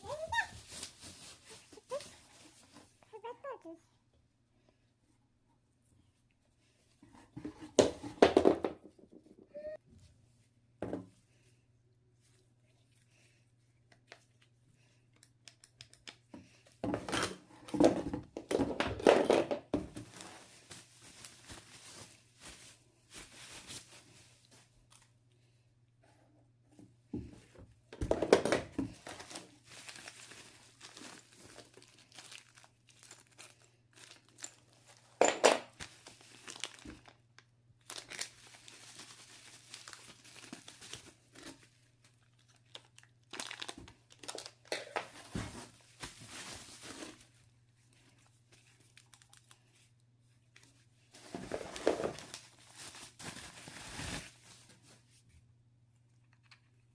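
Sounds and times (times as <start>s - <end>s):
packaging crinkling and tearing: 29.0s - 35.2s, 35.8s - 47.3s, 48.6s - 49.7s, 51.2s - 54.7s.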